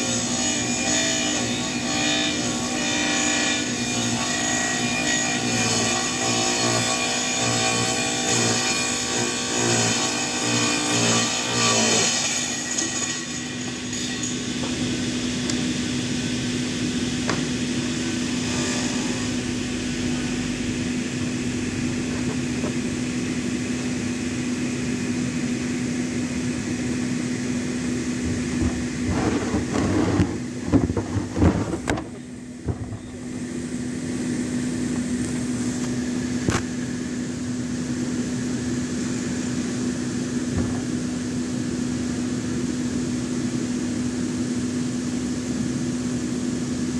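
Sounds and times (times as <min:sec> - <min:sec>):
circular saw cutting wood: 0:00.0 - 0:22.9, 0:27.8 - 0:32.2.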